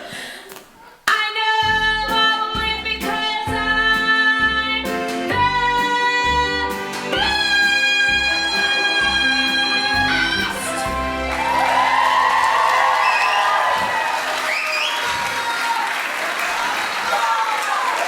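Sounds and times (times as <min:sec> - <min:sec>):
woman singing: 0:01.1 - 0:10.7
backing music: 0:01.6 - 0:12.5.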